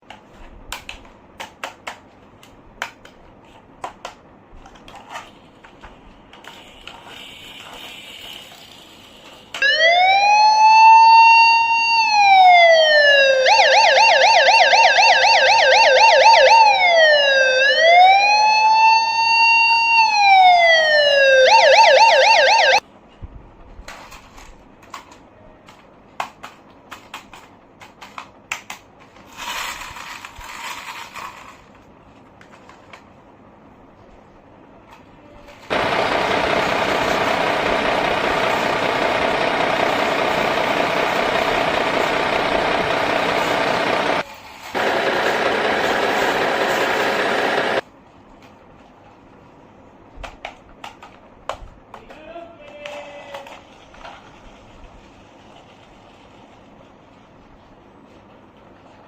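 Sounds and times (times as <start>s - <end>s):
toy police siren: 9.6s - 22.8s.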